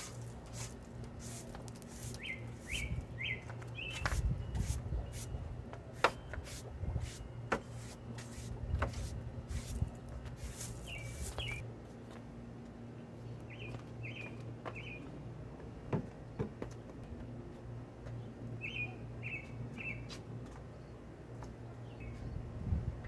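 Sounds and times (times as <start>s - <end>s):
steady low hum: 0.0s - 23.0s
bird chirping: 2.0s - 5.3s, 10.4s - 11.6s.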